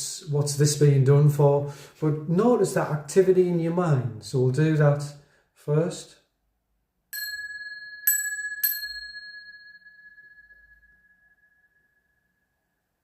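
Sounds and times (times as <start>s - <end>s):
small bells ringing: 7.2s - 12.9s.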